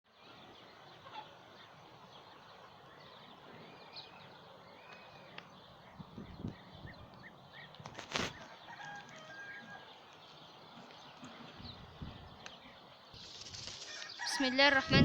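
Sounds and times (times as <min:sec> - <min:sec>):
birds chirping and warbling: 0:00.1 - 0:15.0.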